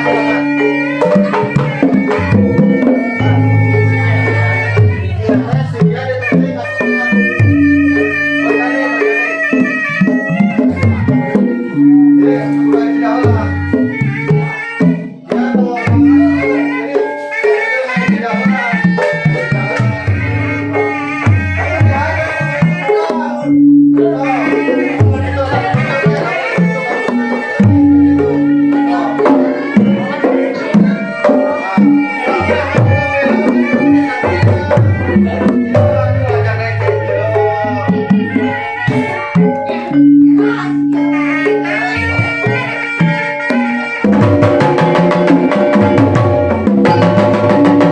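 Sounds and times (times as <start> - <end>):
ringing bronze notes: 0.0 - 14.6, 15.8 - 47.9
hand drum strokes: 0.0 - 23.4, 41.0 - 47.9
held low tones: 1.5 - 6.6, 32.4 - 43.2
low gong tone: 3.2 - 5.7.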